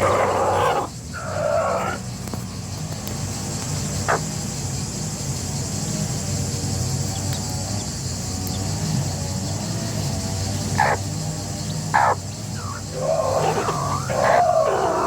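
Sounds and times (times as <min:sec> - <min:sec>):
chickens squawking: 0:00.0 - 0:02.1, 0:10.7 - 0:11.1, 0:11.8 - 0:15.0.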